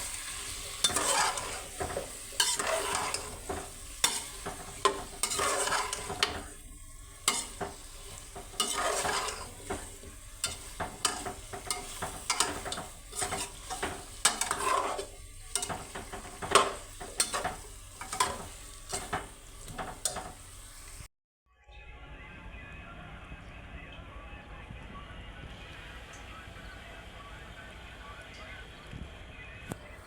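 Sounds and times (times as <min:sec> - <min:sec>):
utensil scraping a pan: 0:00.0 - 0:20.6
food sizzling: 0:00.0 - 0:21.1.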